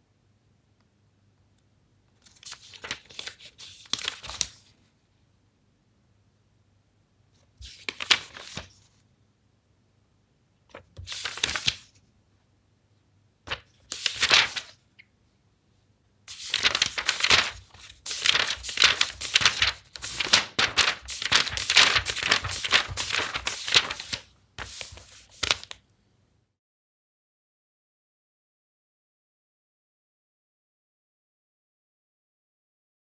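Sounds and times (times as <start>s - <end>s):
book pages turning: 2.2s - 4.6s, 7.6s - 8.8s, 10.7s - 11.8s, 13.5s - 14.8s, 16.3s - 25.8s
quick page flipping: 2.2s - 4.6s, 7.6s - 8.8s, 10.7s - 11.9s, 13.5s - 14.8s, 16.3s - 25.8s.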